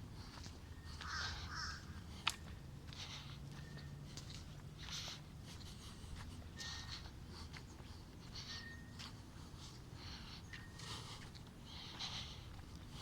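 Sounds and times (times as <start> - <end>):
bird giving harsh raspy calls: 1.0 - 1.9.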